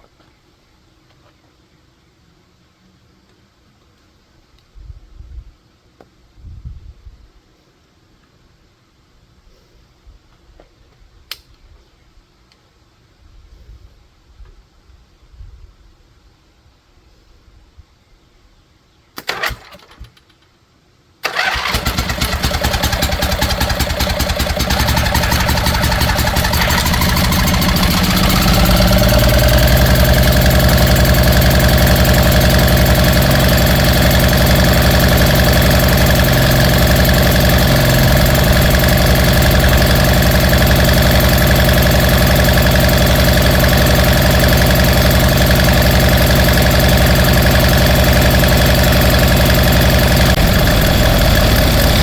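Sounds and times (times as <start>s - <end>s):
engine starting and running: 19.2s - 20.4s, 21.2s - 52.0s.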